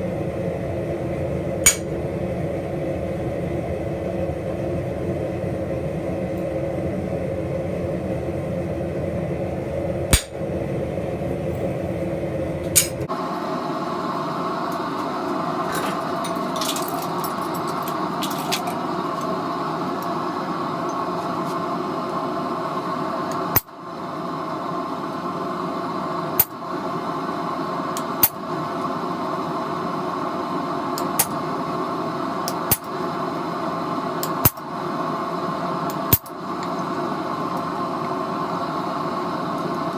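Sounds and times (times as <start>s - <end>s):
machine humming: 0.0s - 2.8s, 9.4s - 39.9s.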